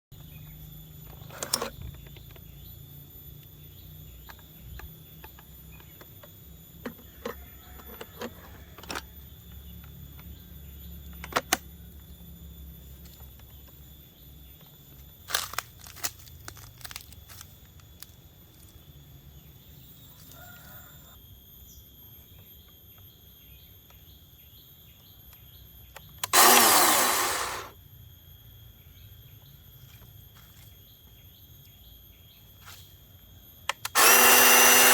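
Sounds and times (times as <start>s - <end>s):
electric chainsaw motor whining: 26.1s - 27.8s, 33.7s - 34.9s.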